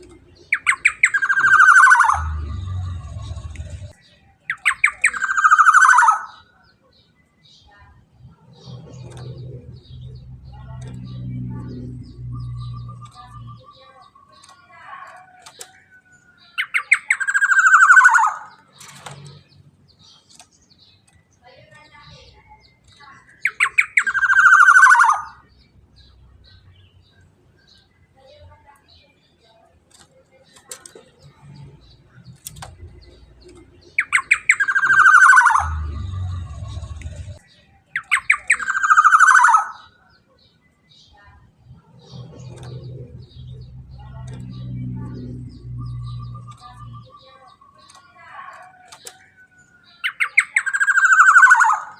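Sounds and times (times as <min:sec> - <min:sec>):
oriole calling: 0:00.0 - 0:04.0
low rumble: 0:02.2 - 0:04.0, 0:35.4 - 0:37.4, 0:41.6 - 0:47.1.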